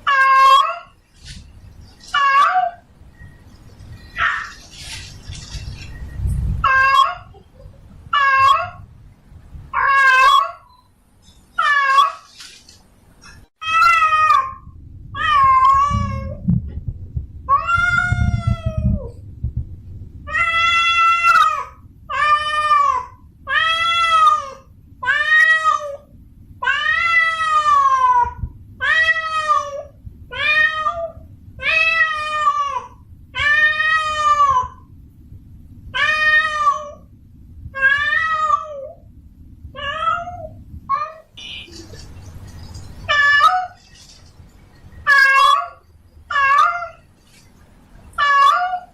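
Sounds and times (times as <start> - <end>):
cat meowing: 15.2 - 16.4, 43.1 - 43.8, 45.1 - 47.1, 48.2 - 48.9.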